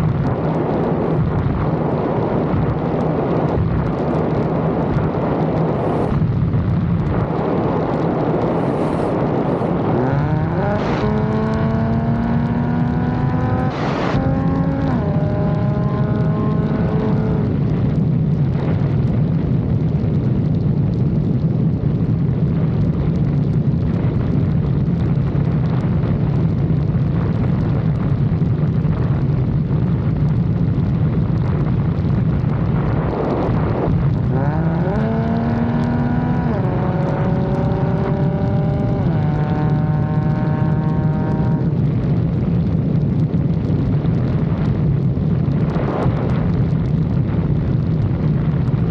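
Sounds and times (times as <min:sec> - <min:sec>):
road noise: 0:00.0 - 0:48.9
car engine accelerating: 0:07.0 - 0:18.0, 0:32.7 - 0:42.3.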